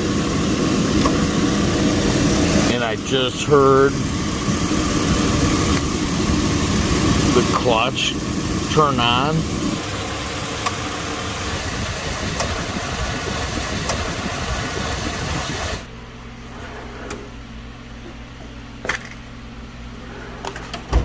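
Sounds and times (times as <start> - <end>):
engine idling: 0.0 - 16.1
ac compressor running: 0.0 - 21.0.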